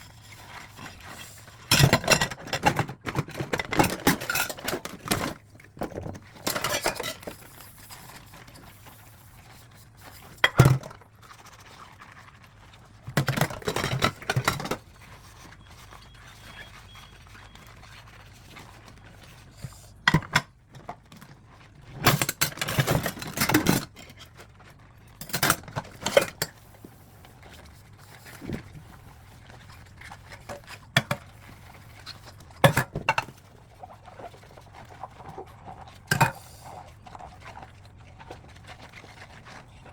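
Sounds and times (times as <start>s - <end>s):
dishes and cutlery clinking: 1.7s - 5.4s, 6.4s - 7.4s.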